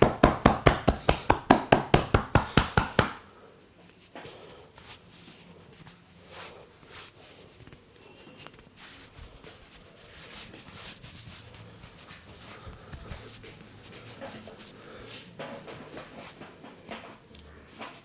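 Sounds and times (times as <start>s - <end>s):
hands rubbing skin: 0.0s - 3.2s.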